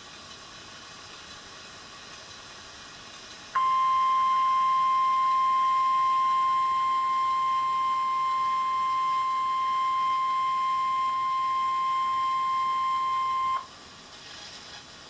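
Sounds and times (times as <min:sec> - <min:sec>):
steady high-pitched alarm tone: 0:03.6 - 0:13.7.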